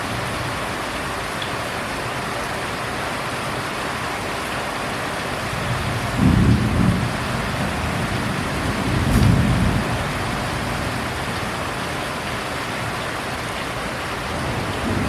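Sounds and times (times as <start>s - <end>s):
heavy rain falling: 0.0s - 15.0s
low rumbles of thunder: 5.6s - 11.6s, 14.3s - 15.0s.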